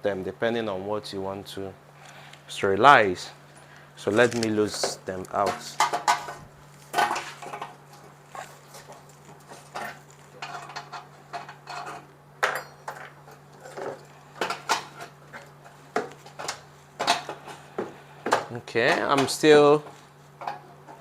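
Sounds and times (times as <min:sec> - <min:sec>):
steady low hum: 0:00.0 - 0:21.0
hand tools clinking on metal: 0:08.7 - 0:15.5.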